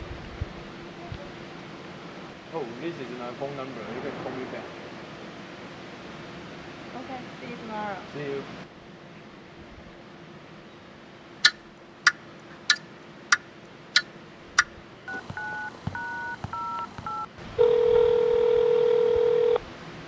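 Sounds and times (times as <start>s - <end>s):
phone keypad touch-tones: 15.1s - 17.8s
phone ring tone: 15.1s - 19.6s.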